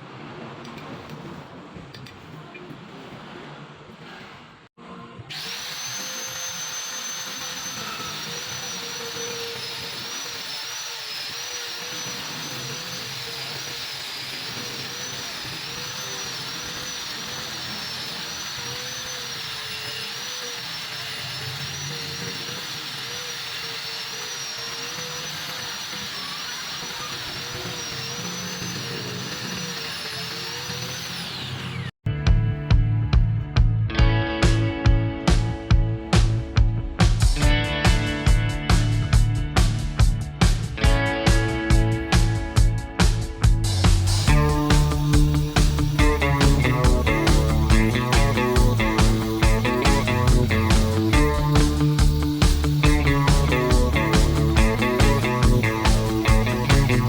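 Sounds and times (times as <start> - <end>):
rotary tool whining: 5.3 - 32.0, 43.9 - 57.0.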